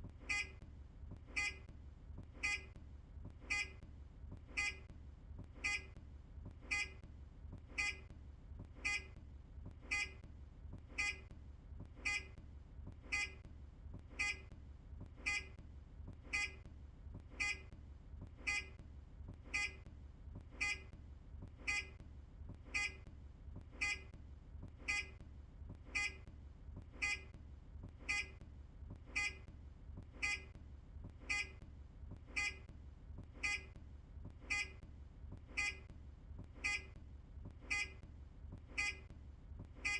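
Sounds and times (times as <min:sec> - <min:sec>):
turn-signal electronic beeps: 0:38.8 - 0:39.1.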